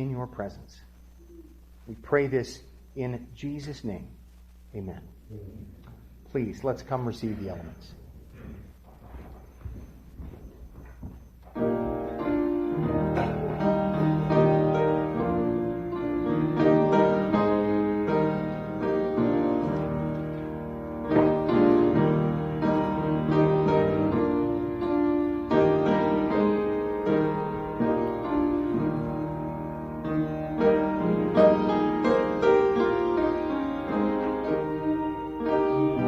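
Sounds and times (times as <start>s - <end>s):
solo piano playing: 11.5s - 36.0s.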